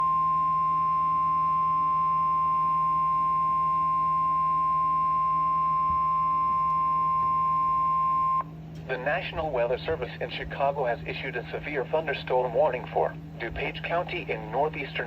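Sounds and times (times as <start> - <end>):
steady high alarm tone: 0.0 - 8.4.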